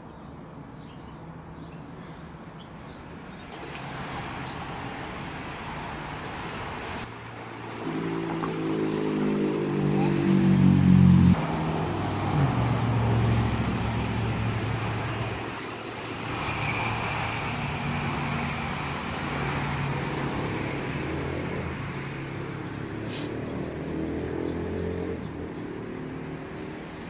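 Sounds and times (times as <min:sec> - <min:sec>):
road noise: 0:00.0 - 0:27.0.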